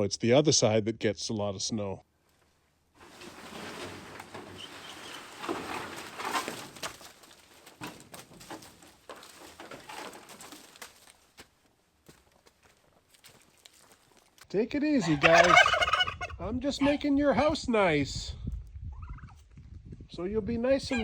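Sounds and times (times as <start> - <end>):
poultry chattering: 15.0 - 17.0.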